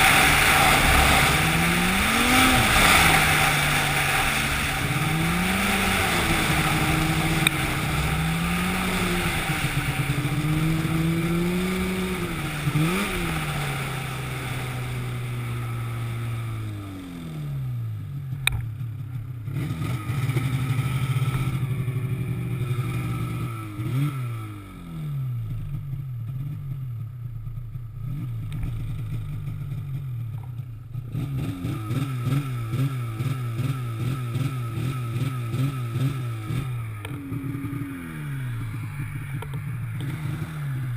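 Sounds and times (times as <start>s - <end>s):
hiss: 0.0s - 15.0s
motor engine revving: 0.0s - 27.0s, 31.0s - 40.9s.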